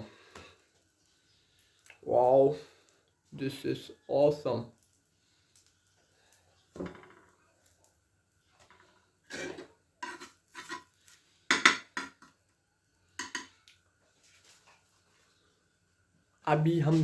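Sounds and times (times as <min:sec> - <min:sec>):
dishes and utensils clinking: 0:08.7 - 0:12.3, 0:13.2 - 0:13.6.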